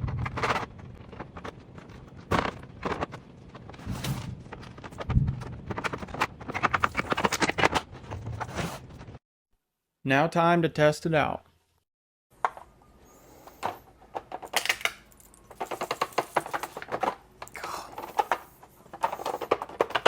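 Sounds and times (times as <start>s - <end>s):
plastic parts knocking and clicking: 0.0s - 8.5s, 13.5s - 20.0s.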